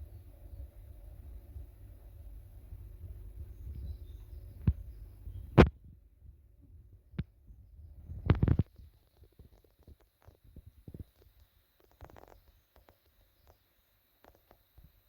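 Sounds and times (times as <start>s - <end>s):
low rumble: 0.0s - 8.4s.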